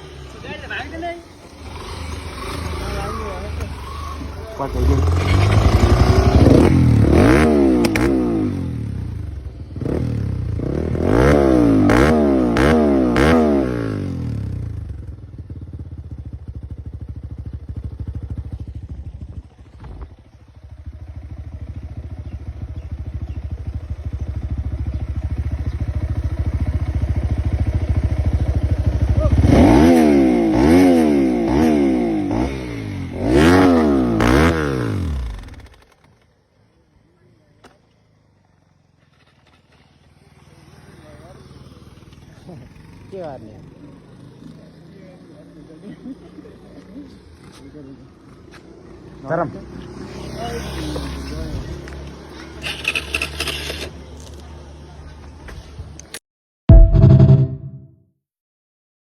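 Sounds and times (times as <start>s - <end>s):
dirt bike engine revving: 0.0s - 15.0s, 25.3s - 36.2s.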